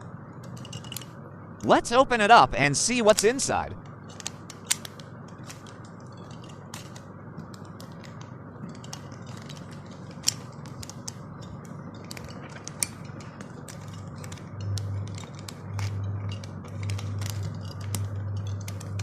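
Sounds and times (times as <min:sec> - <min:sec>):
sharp plastic snaps: 0:03.1 - 0:16.0.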